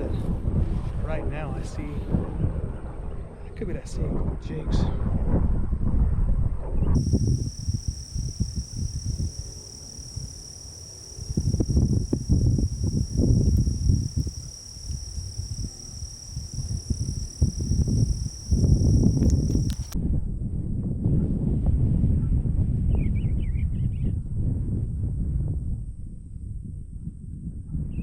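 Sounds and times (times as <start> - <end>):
crickets chirping: 7.0 - 20.0
low rumbling and thumps: 7.0 - 20.0.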